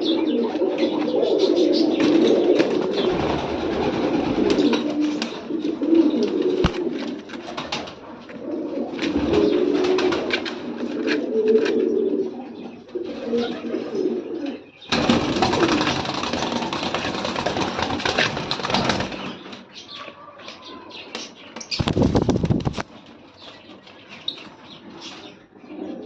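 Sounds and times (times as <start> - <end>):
pigeon wings flapping: 2.6 - 5.4, 14.9 - 19.4, 21.8 - 22.9.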